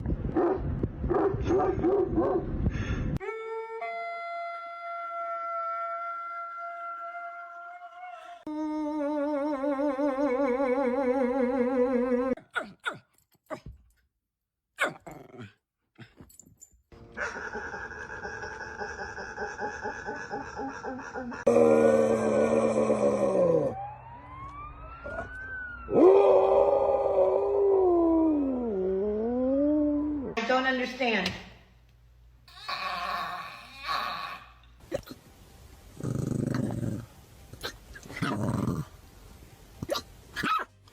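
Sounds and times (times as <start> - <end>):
dog grumbling: 36.0 - 38.9.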